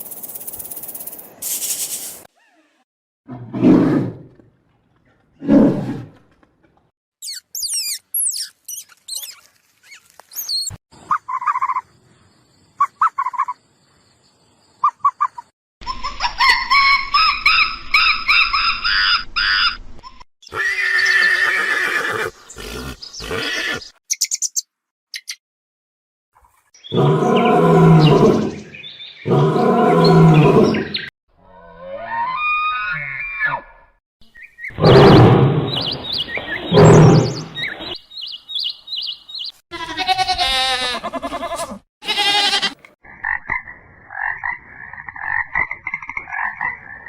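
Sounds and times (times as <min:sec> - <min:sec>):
high chirping: 0:07.2 - 0:11.8
animal calls: 0:36.4 - 0:38.0.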